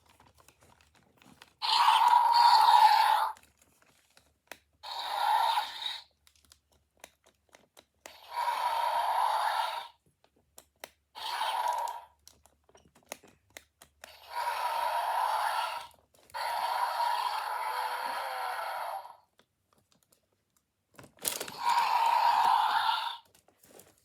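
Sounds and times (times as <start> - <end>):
rasping dinosaur roars: 1.6 - 3.4, 8.2 - 9.9, 14.2 - 19.2, 21.5 - 23.2.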